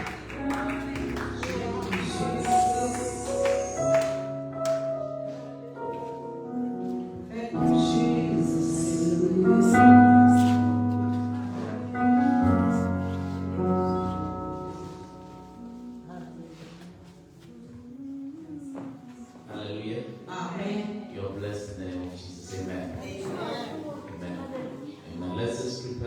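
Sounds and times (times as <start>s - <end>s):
singing: 0.0s - 4.4s
low bass notes: 0.0s - 5.1s
sustained keyboard chords: 0.0s - 16.6s.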